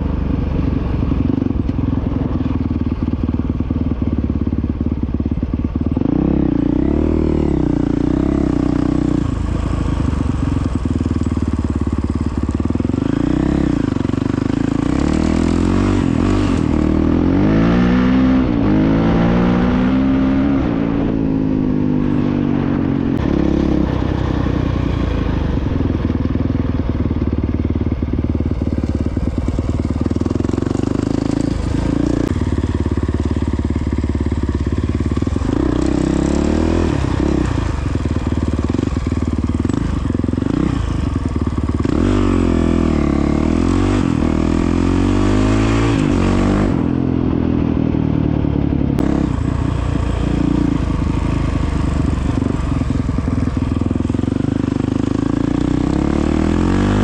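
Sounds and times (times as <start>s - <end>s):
dirt bike engine revving: 12.4s - 26.1s, 28.2s - 47.3s, 49.0s - 52.8s, 53.6s - 57.0s.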